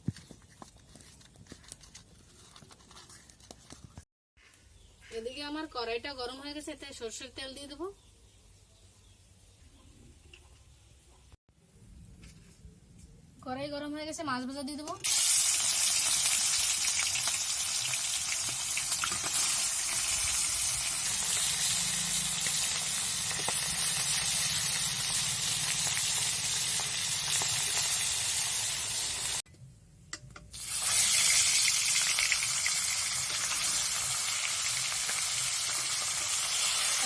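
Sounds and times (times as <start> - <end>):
oil spattering crackles: 15.0 - 28.4
fish sizzling in hot oil: 15.0 - 29.4, 30.6 - 37.0.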